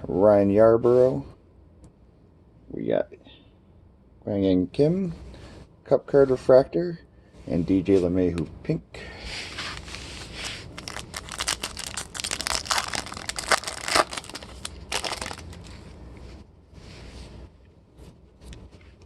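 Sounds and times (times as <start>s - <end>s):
wrapper crinkling and tearing: 9.8s - 15.8s.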